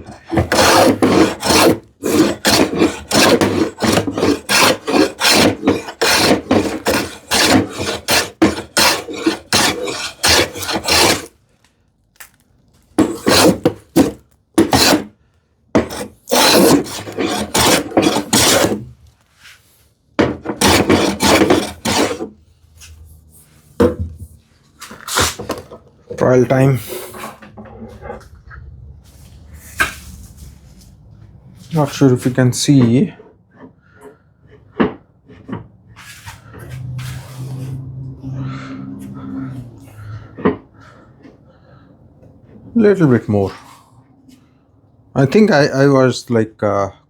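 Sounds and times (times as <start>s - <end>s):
hand plane rasping on wood: 0.0s - 11.3s, 13.0s - 15.1s, 15.8s - 18.9s, 20.2s - 22.3s.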